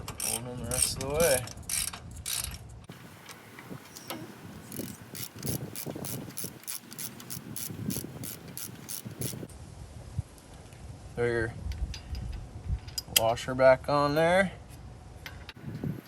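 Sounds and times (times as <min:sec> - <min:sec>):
hand ratchet clicking: 0:00.0 - 0:02.6, 0:03.2 - 0:09.5.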